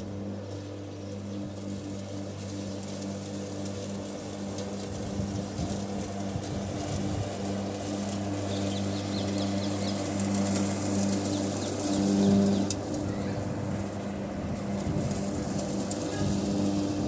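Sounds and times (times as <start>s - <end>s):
electric lawn mower humming: 0.0s - 17.0s
birds chirping: 0.5s - 2.0s, 8.0s - 13.9s.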